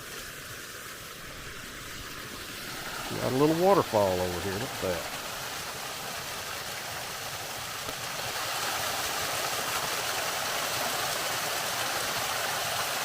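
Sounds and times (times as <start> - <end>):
waterfall splashing: 0.0 - 13.0.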